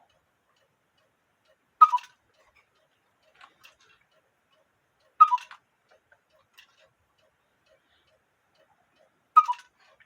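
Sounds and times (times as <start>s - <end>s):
clock ticking: 0.0s - 10.0s
faint mechanical clicks: 0.0s - 10.0s
cuckoo clock calling: 1.5s - 2.9s, 5.0s - 10.0s.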